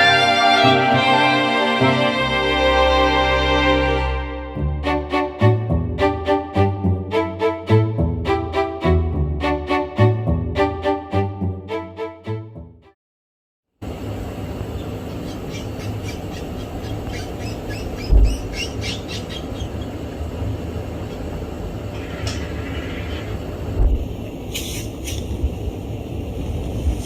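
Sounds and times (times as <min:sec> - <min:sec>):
low rumbling background noise: 0:13.8 - 0:27.0.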